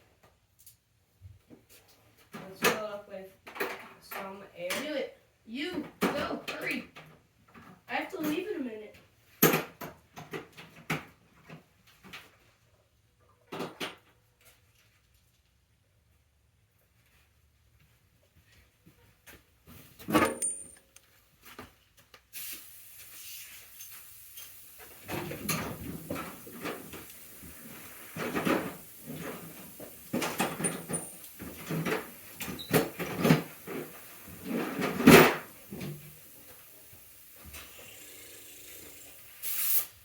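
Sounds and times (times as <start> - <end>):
knocks and clatter of handled objects: 18.9 - 22.2, 23.8 - 36.0.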